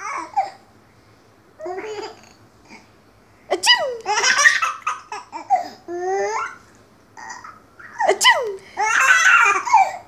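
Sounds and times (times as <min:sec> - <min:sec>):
woman sneezing: 0:03.5 - 0:04.0, 0:08.0 - 0:08.7
baby giggling: 0:03.5 - 0:06.6.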